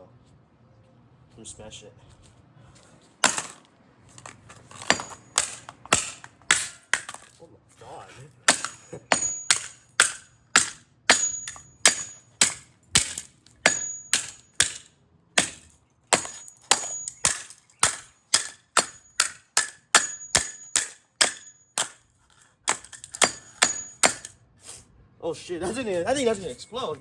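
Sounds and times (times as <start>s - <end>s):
hammer smashing plastic headphones: 3.2s - 3.6s, 4.2s - 7.4s, 8.5s - 24.4s.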